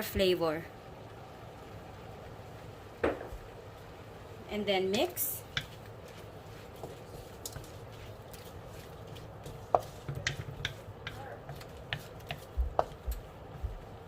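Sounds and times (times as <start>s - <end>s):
utensil knocking and scraping pan: 5.5s - 13.9s.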